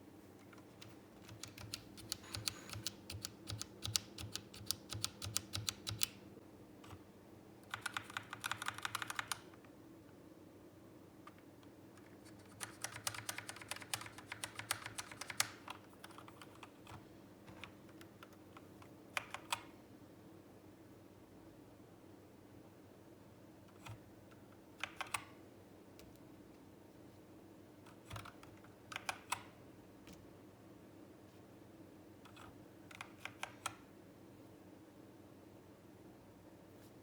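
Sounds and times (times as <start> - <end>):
keyboard typing: 0.4 - 6.2, 7.6 - 9.6, 12.0 - 19.8, 24.8 - 25.4, 27.9 - 29.6, 32.3 - 33.8.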